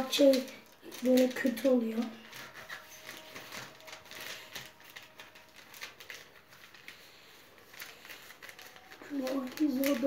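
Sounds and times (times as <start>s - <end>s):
paper rustling and crinkling: 0.0s - 10.0s.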